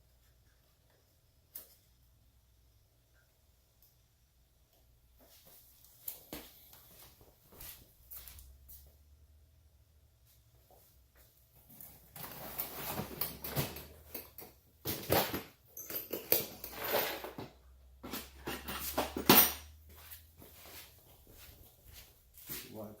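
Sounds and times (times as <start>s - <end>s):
rustling of wiring and zip ties: 11.6s - 22.8s.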